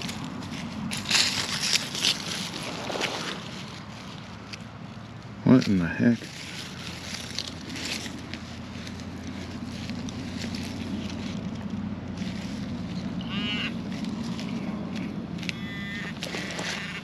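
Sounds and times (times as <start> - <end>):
steady low hum: 0.0 - 17.0
metal detector honk tones: 13.2 - 13.8, 15.4 - 17.0.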